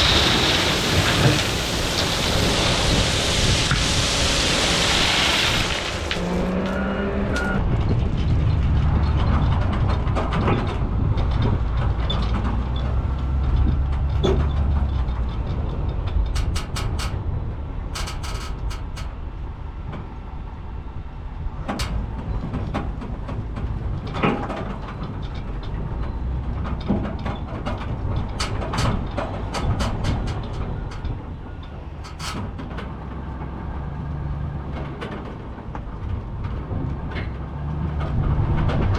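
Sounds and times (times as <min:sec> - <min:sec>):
clanks and rattles of truck: 0:00.0 - 0:38.9
heavy truck engine rumble: 0:00.0 - 0:38.9.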